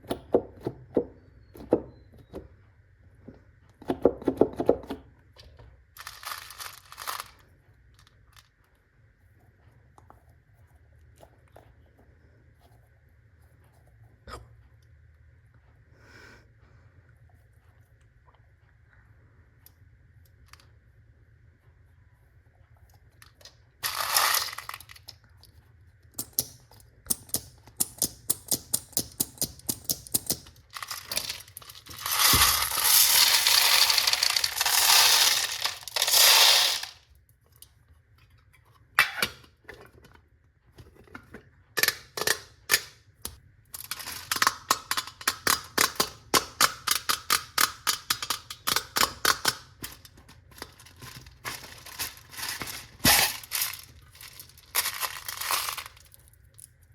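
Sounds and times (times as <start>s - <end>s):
hard candies clattering: 6.0s - 7.4s, 23.8s - 25.2s, 29.9s - 37.0s, 43.8s - 56.3s.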